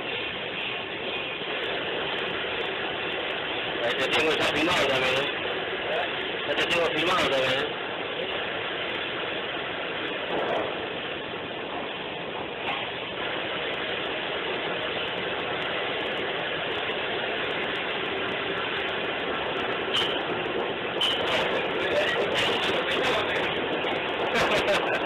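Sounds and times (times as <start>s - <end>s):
belt conveyor running: 0.0s - 25.0s.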